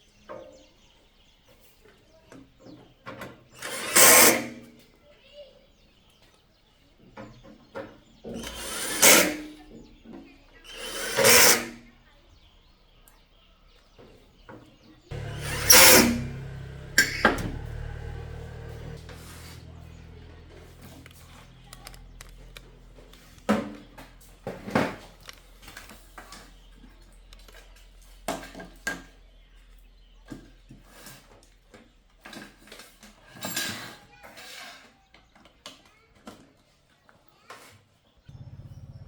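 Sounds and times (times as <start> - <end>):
low hum: 15.1 - 23.4.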